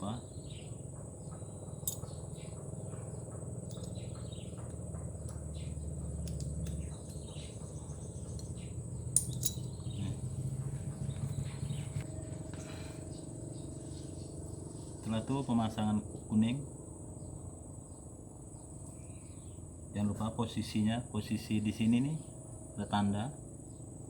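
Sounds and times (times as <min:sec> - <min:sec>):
low hum: 0:00.0 - 0:22.8
cricket trill: 0:00.0 - 0:24.0
metal parts clicking and tapping: 0:01.7 - 0:02.4, 0:03.6 - 0:10.0.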